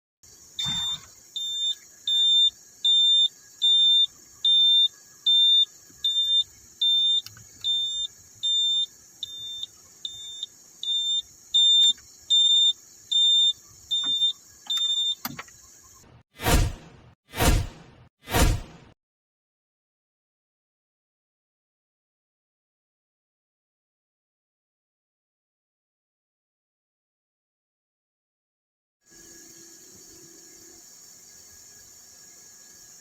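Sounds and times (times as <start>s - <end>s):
warning buzzer beeping: 0.6s - 15.3s
whoosh: 16.4s - 18.9s.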